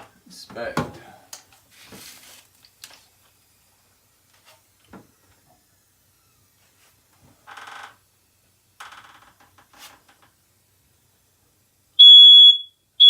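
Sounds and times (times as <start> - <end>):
smoke detector beep: 12.0 - 12.8.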